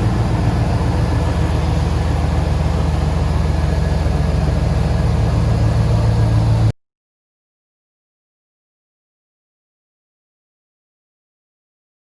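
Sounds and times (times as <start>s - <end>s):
truck engine idling: 0.0s - 6.7s.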